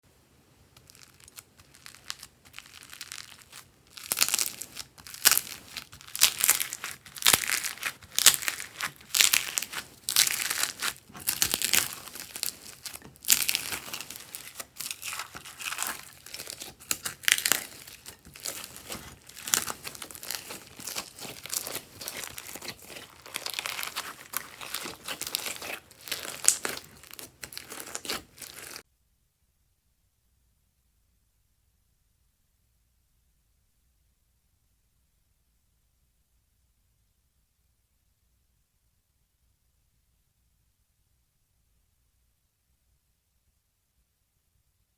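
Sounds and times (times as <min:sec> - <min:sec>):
crunchy slime crackling and popping: 0:00.8 - 0:28.8.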